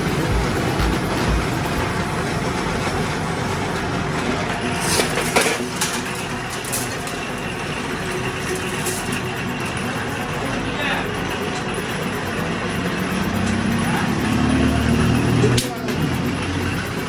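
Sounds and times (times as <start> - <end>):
spring making machine running: 0.0 - 17.0
sharp mechanical clicks: 4.6 - 17.0.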